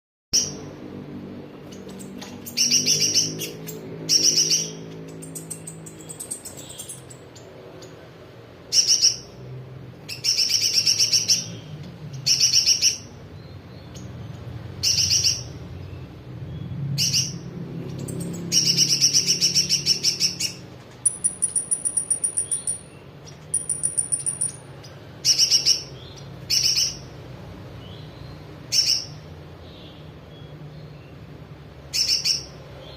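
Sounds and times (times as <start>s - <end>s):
bird rattling high notes: 21.0s - 24.6s
thin high whistled bird phrases: 21.1s - 23.0s.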